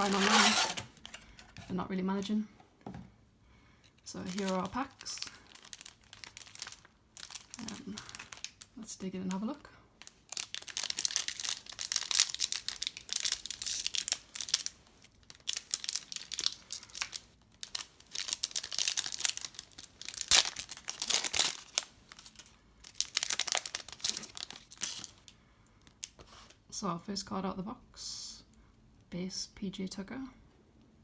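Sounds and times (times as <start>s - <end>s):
plastic wrapping crinkling and tearing: 0.0s - 1.5s, 4.1s - 8.8s, 10.0s - 26.5s.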